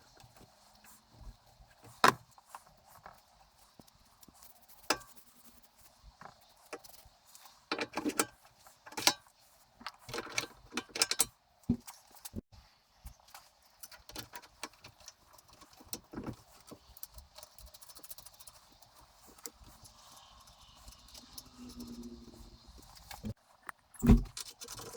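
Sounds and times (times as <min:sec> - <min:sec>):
metal tools clicking and knocking: 0:10.1 - 0:11.8
metal parts clattering and rattling: 0:24.0 - 0:24.9.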